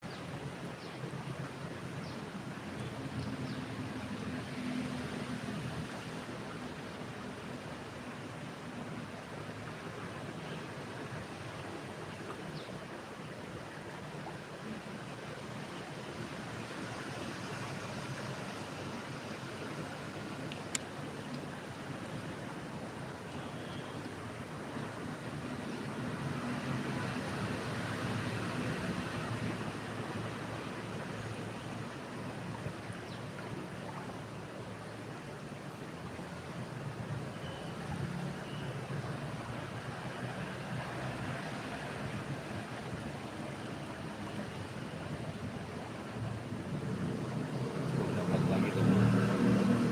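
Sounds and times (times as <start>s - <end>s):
river water rushing: 0.0s - 49.9s.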